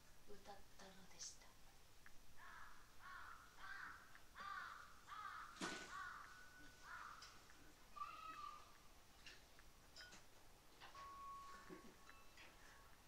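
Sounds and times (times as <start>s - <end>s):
harsh caw-like bird calls: 2.4s - 8.7s.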